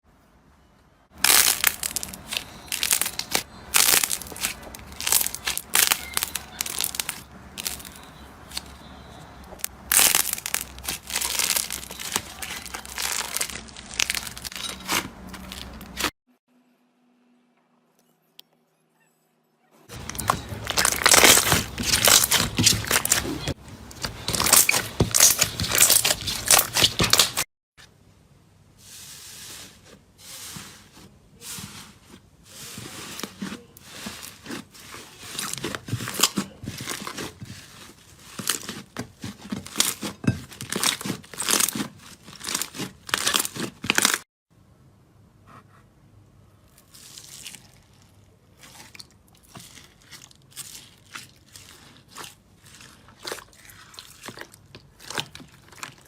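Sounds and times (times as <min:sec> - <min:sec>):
slime squeezed crackling: 0:01.2 - 0:08.7, 0:09.6 - 0:16.1, 0:19.9 - 0:27.4, 0:32.8 - 0:44.2, 0:46.7 - 0:56.0.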